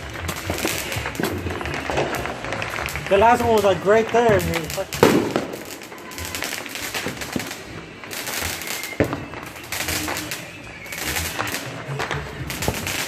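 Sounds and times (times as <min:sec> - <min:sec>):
crackling pops: 0:00.0 - 0:13.0
firework shots hissing: 0:00.0 - 0:13.0
sharp firework bang: 0:04.2 - 0:07.6, 0:09.0 - 0:10.2.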